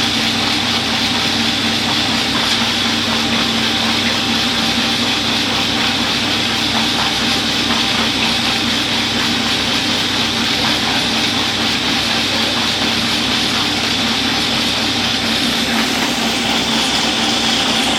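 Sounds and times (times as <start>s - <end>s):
washing machine running: 0.0s - 17.9s.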